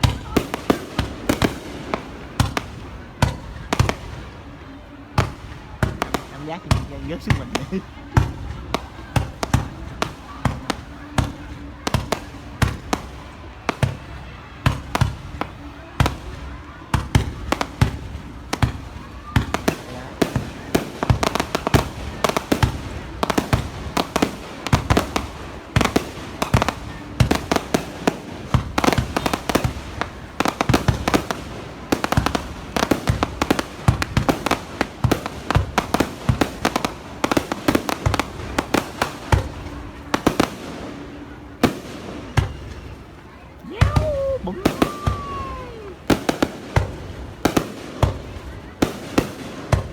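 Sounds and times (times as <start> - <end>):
fireworks banging: 0.0 - 49.9
fireworks crackling: 0.0 - 49.9.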